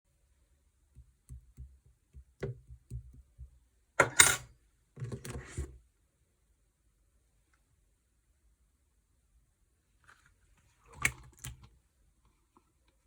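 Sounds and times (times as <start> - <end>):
wet slime squishes: 10.2 - 11.8.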